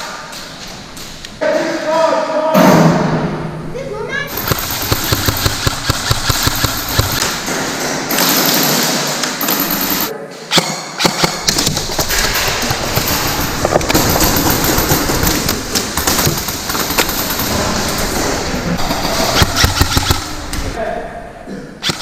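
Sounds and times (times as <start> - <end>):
loud noisy background: 2.5 - 10.1, 11.2 - 22.0
airsoft guns firing: 4.3 - 20.8.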